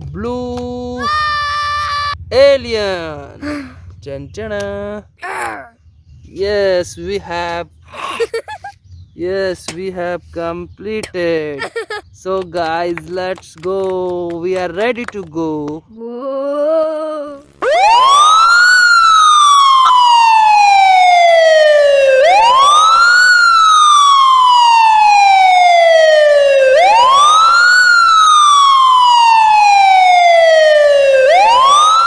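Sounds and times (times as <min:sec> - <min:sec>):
wailing siren: 0:17.4 - 0:32.0.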